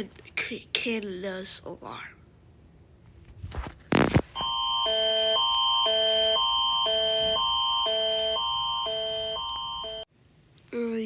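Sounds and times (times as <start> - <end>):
alternating emergency alert tone: 4.4 - 10.1.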